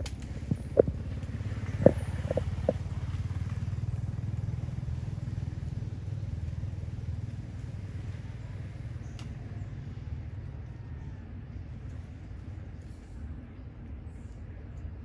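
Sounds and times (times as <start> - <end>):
engine rumbling: 0.0 - 8.8.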